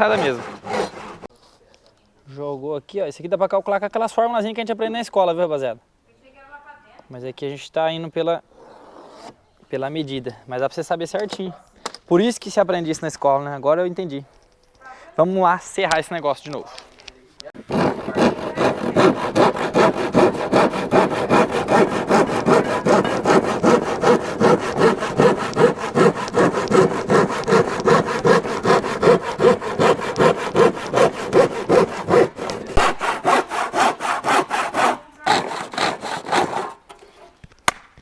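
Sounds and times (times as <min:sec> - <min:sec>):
handsaw cutting panel: 0:00.0 - 0:01.3, 0:17.6 - 0:37.1.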